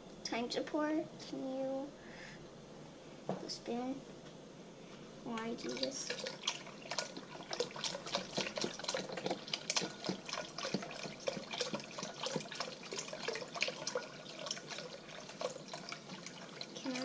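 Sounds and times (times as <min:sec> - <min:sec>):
liquid splashing: 0:05.3 - 0:17.0
liquid pouring into a pot: 0:05.4 - 0:17.0.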